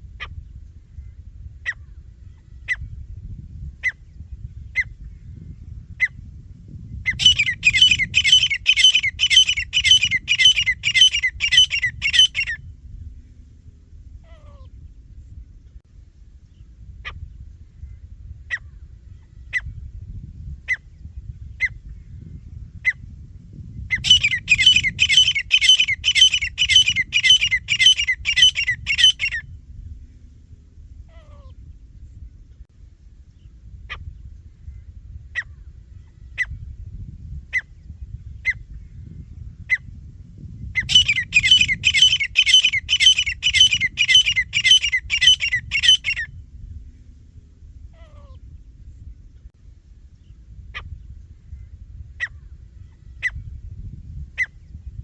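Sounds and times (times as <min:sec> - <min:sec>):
francolin calling: 0:07.1 - 0:12.6, 0:23.9 - 0:29.4, 0:40.8 - 0:46.3.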